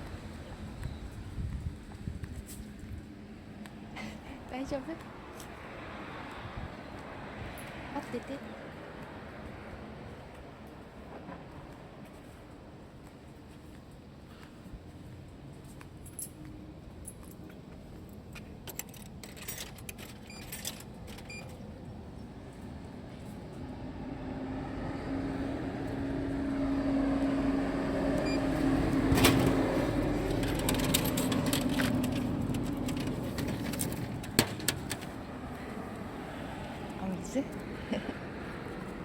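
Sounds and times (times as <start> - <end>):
light clicks and jingles: 7.5 - 7.8, 15.6 - 21.6, 30.3 - 35.1
motor vehicle running: 22.5 - 39.0.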